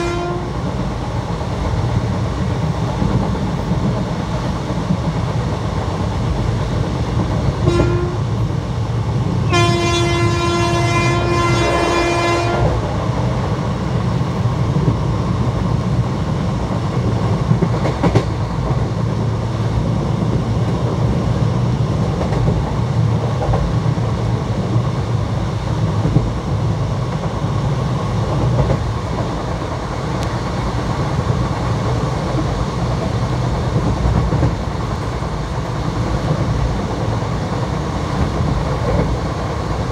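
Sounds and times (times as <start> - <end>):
locomotive horn blasts: 0.0 - 0.6, 7.6 - 8.3, 9.5 - 12.8
train coaches rumbling on track: 0.0 - 39.9.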